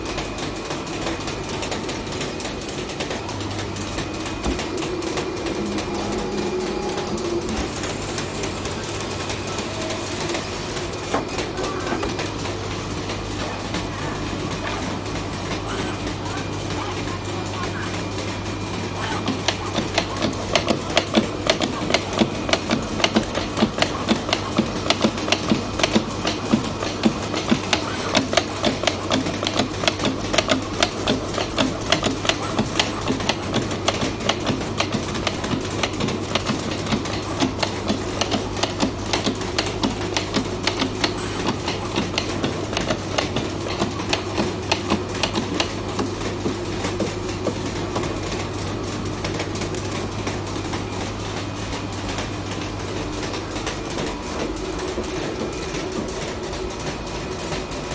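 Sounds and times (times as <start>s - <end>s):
low machine hum: 0.0s - 57.9s
plotter clattering clicks: 18.7s - 57.9s.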